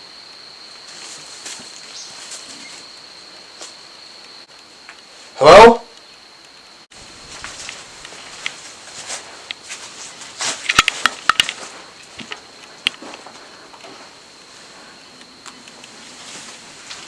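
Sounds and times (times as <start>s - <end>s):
crunching and cracking: 7.4s - 14.0s.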